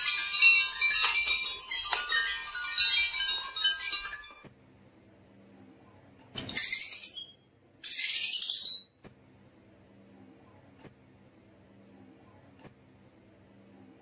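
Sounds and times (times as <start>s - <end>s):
glass marbles clattering: 0.0s - 4.5s, 6.4s - 8.9s.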